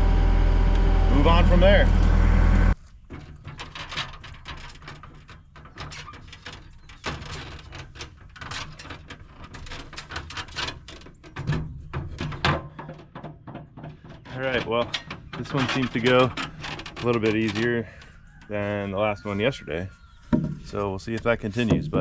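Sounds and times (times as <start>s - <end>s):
low steady hum: 0.0s - 2.8s.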